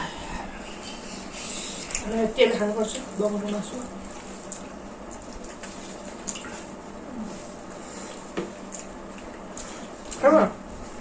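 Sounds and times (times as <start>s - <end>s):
soft chewing: 3.4s - 10.2s.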